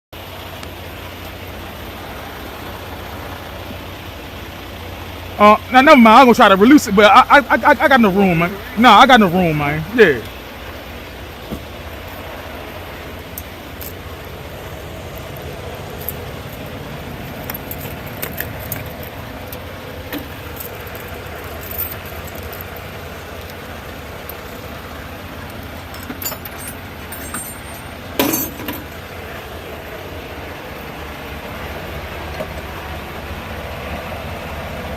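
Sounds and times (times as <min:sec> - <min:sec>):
steady low rumble: 0:07.2 - 0:28.1
metallic clatter: 0:15.1 - 0:23.6, 0:25.5 - 0:29.0
light metallic clicks and clinks: 0:15.2 - 0:23.6, 0:25.4 - 0:28.9.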